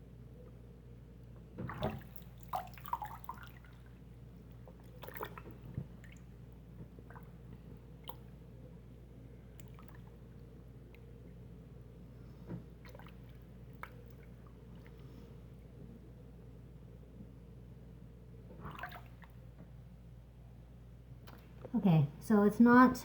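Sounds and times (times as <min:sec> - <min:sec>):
water squelching in sink drain: 0:01.6 - 0:11.5, 0:12.5 - 0:15.2, 0:18.5 - 0:19.6
water dripping: 0:09.5 - 0:11.4.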